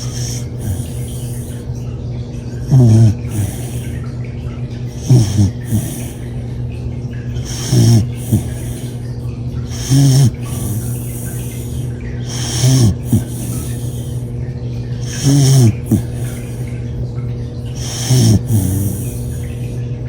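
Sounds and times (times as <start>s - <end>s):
person snoring: 0.0s - 1.7s, 2.6s - 4.0s, 5.0s - 6.3s, 7.4s - 9.0s, 9.7s - 14.3s, 15.0s - 16.6s, 17.8s - 19.5s
steady low hum: 0.0s - 20.0s.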